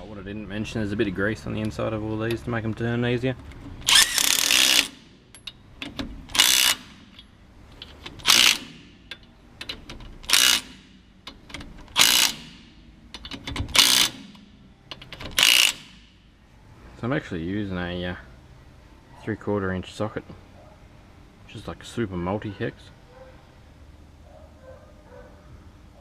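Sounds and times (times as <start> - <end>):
impact wrench hammering nuts: 3.8 - 7.3, 7.9 - 16.2.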